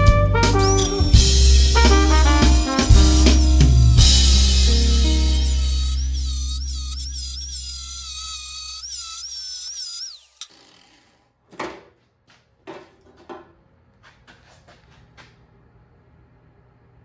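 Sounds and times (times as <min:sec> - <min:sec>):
electronic music with wavering tones: 0:00.4 - 0:10.3
knocks and scrapes of hand work: 0:11.5 - 0:15.3.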